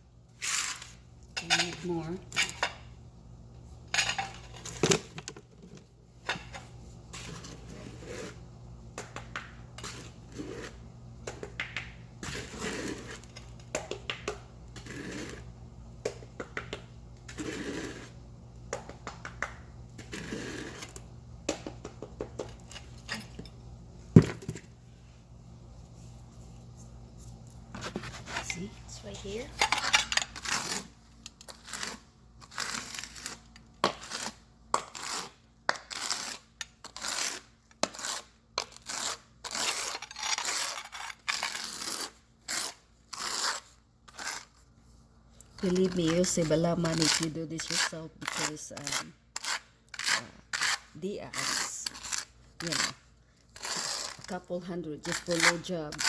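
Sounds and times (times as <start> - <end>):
trowel scraping mortar: 7.1 - 8.4, 9.8 - 10.8, 12.2 - 13.4, 14.8 - 15.5, 17.3 - 18.2, 20.0 - 21.0, 31.5 - 33.4, 34.0 - 44.6, 45.6 - 56.0.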